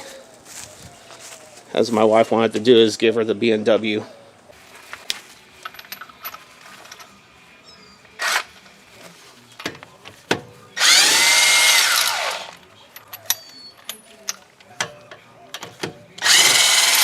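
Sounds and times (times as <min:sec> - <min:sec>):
power drill running: 0:10.8 - 0:12.6, 0:16.2 - 0:17.0.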